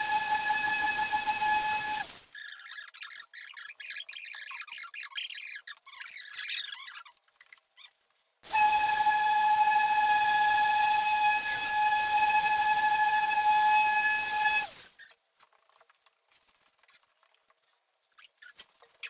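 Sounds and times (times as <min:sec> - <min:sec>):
car polisher whining: 0:00.0 - 0:02.1, 0:08.5 - 0:14.8.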